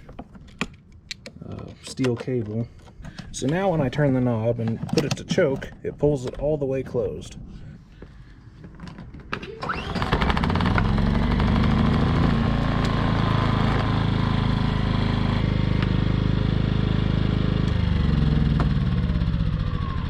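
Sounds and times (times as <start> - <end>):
recoil starter pull whir: 9.3 - 16.5
small generator engine running: 9.4 - 20.0.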